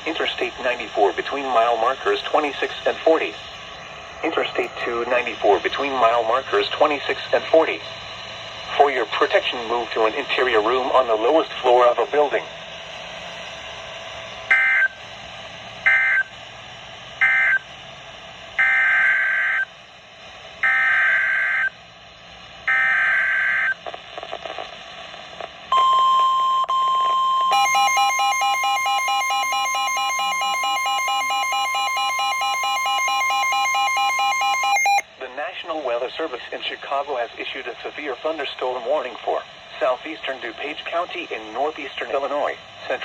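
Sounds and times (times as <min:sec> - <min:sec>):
steady high alert tone: 0:25.8 - 0:35.1.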